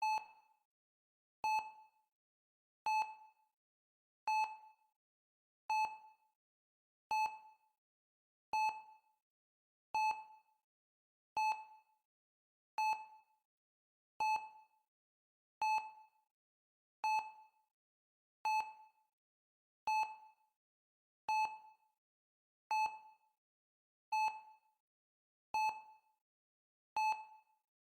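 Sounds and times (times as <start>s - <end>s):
heart-rate monitor beeping: 0.0s - 0.4s, 1.4s - 1.8s, 19.9s - 20.2s, 27.0s - 27.5s.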